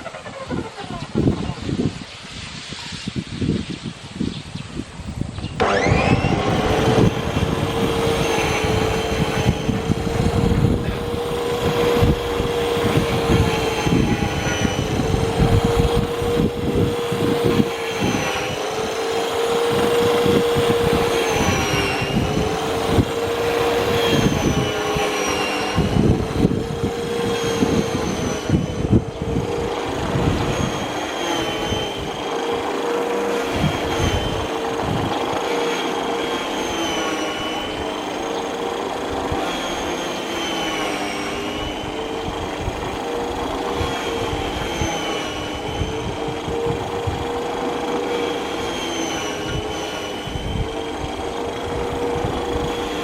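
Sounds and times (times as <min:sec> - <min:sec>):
reel lawn mower whine: 0:00.0 - 0:53.0
grass cutting crackle: 0:05.4 - 0:53.0.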